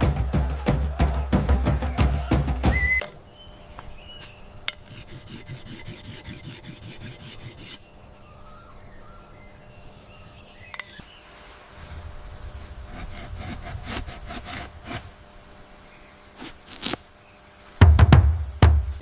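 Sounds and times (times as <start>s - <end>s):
drumming: 0.0s - 3.0s, 17.8s - 19.0s
rhythmic rasping scrape: 4.9s - 7.8s
faint bird chirps: 7.8s - 11.3s.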